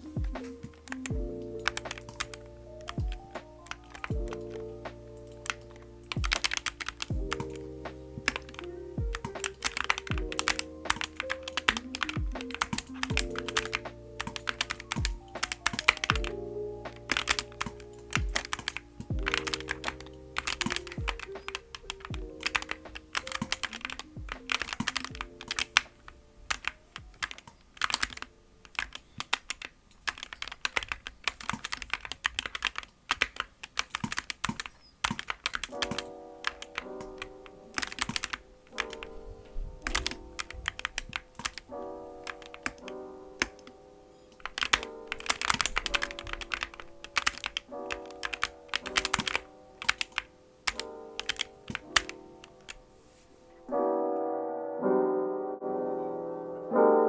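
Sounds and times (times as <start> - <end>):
background music: 0.0 - 29.2, 35.6 - 57.0.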